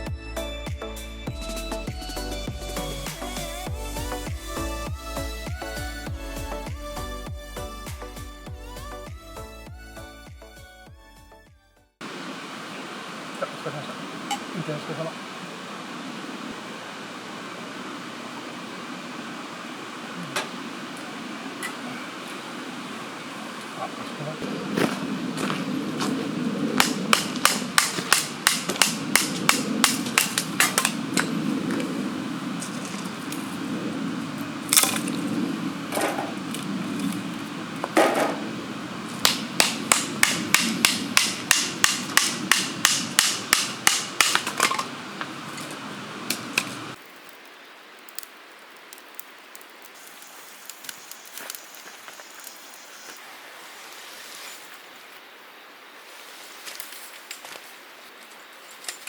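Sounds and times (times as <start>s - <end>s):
hammer striking with ringing blows: 26.8s - 31.0s, 39.2s - 44.9s.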